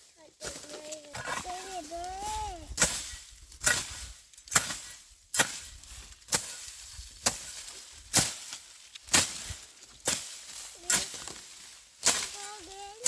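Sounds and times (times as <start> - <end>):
hand tool chopping into ground: 0.4 - 1.8, 2.8 - 12.6.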